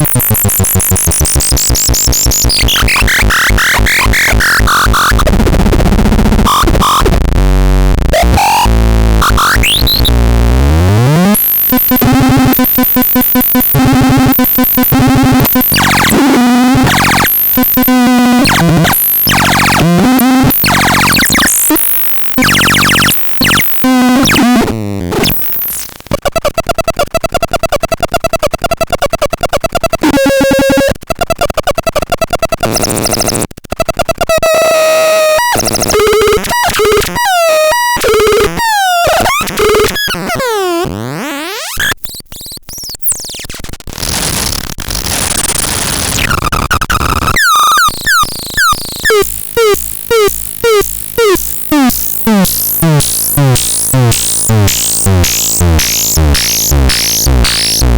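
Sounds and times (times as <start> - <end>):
harsh synthesizer noise: 0.0 - 25.9, 44.0 - 57.9.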